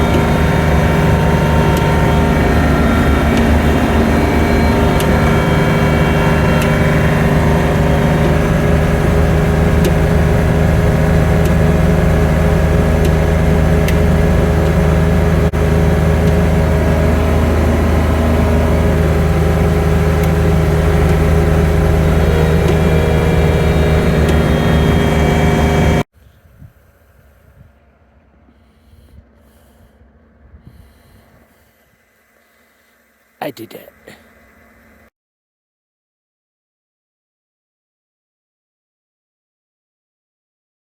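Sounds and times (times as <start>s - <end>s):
tractor diesel engine droning: 0.0s - 26.1s.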